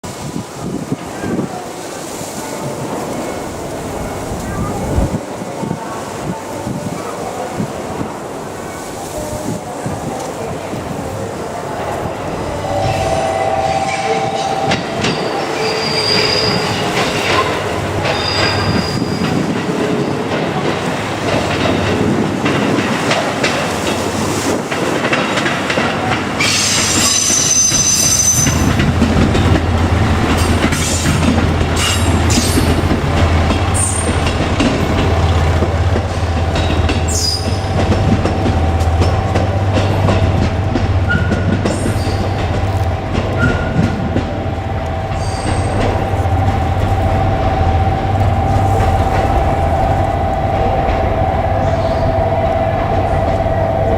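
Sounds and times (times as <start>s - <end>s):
low train rumble: 0.0s - 53.9s
train wheels squealing on rails: 12.3s - 20.2s, 26.0s - 53.9s.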